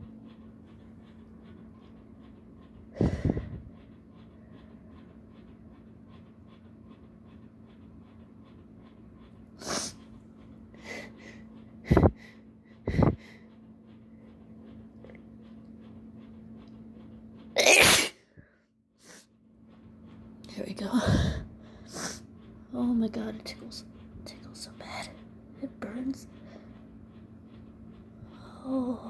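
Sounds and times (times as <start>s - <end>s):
low steady hum: 0.0s - 29.0s
loud sneeze: 17.6s - 18.2s.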